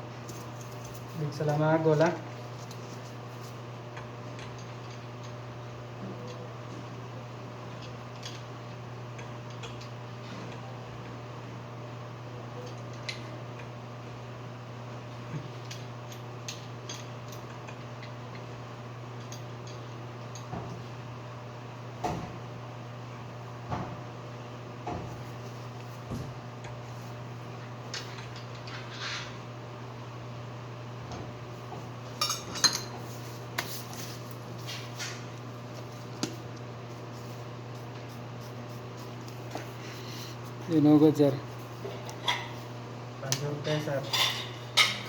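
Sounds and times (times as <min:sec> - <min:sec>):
low electrical hum: 0:00.0 - 0:45.0
crockery and metal clinking: 0:32.2 - 0:33.0.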